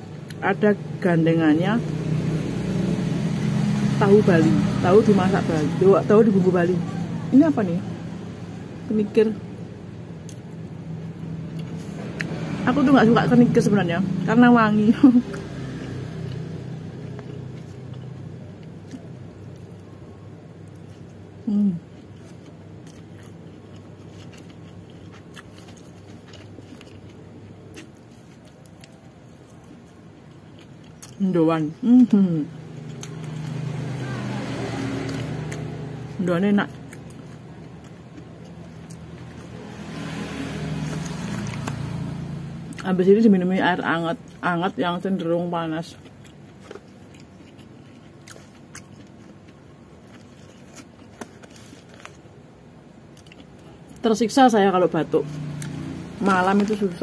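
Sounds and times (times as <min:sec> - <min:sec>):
low background hum: 0:00.0 - 0:57.0
person chewing food: 0:15.3 - 0:31.2, 0:32.6 - 0:42.0, 0:45.8 - 0:54.0.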